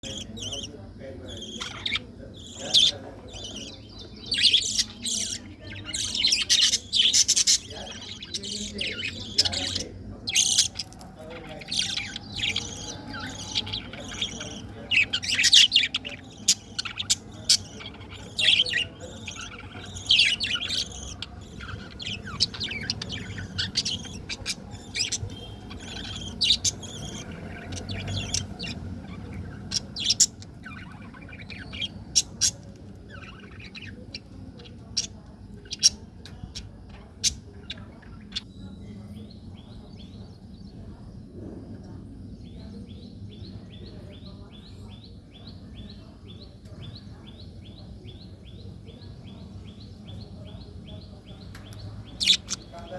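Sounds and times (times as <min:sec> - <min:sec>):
budgerigars chirping: 0:00.0 - 0:40.4, 0:42.5 - 0:52.9.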